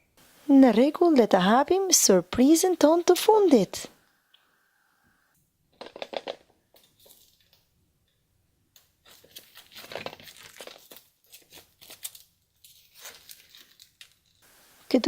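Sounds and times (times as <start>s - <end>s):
foil wrapping crinkling and tearing: 9.0s - 14.4s.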